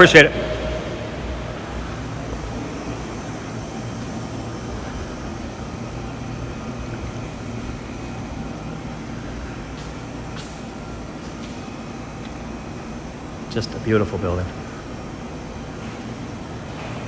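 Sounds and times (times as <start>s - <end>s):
machinery rumble and hum: 0.0s - 17.0s.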